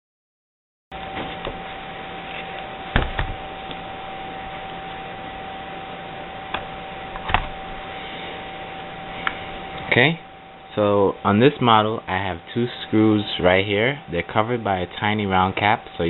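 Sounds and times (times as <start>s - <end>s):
faint constant whine: 0.9s - 16.0s.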